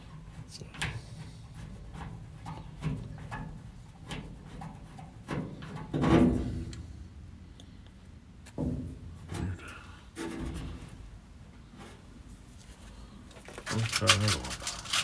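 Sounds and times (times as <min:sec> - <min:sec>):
metal parts clattering: 0:13.5 - 0:15.0
metal tools clicking and knocking: 0:13.7 - 0:15.0.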